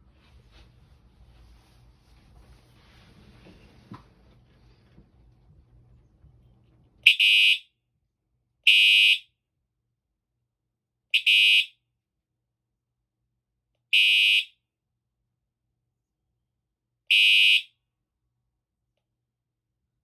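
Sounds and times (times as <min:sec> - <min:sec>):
fire alarm horn blasts: 0:07.0 - 0:07.8, 0:08.6 - 0:09.3, 0:11.1 - 0:11.8, 0:13.9 - 0:14.6, 0:17.1 - 0:17.8.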